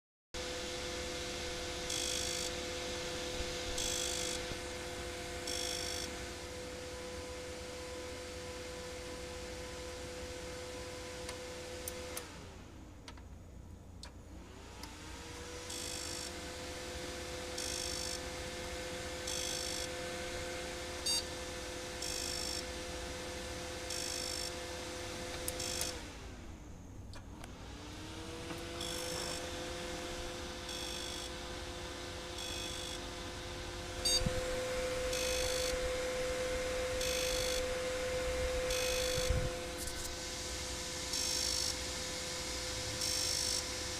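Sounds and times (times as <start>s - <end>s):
hard drive spinning down and up: 0.4s - 12.6s, 14.4s - 26.4s, 27.0s - 43.9s
short buzzing clicks: 25.5s - 26.0s, 28.8s - 29.4s.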